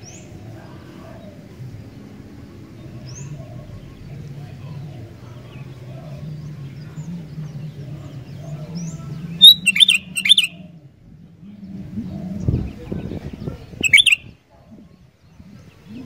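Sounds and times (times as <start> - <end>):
low rumble: 0.0 - 9.5, 10.1 - 16.0
low steady hum: 0.0 - 16.0
bird chirping: 2.8 - 10.6, 13.7 - 14.4.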